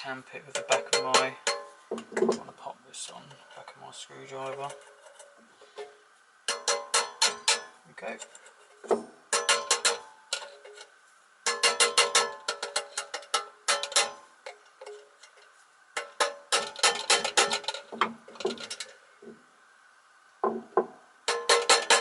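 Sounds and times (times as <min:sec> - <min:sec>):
rapid metallic tapping: 0:11.4 - 0:14.6, 0:20.4 - 0:22.0.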